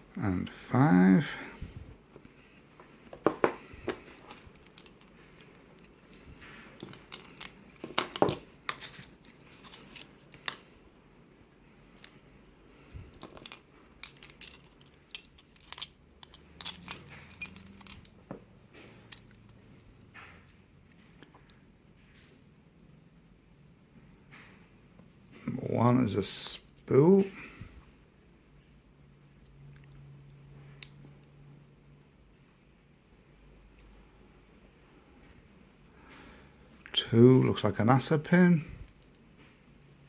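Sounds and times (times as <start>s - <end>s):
small metal lock parts clicking: 4.2s - 5.1s, 6.8s - 10.5s, 13.1s - 18.2s.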